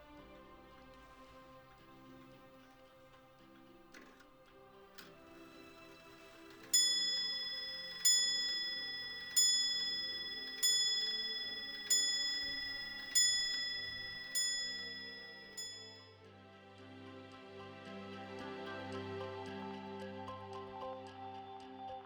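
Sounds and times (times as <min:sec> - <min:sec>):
clock bell striking: 0:06.5 - 0:16.1.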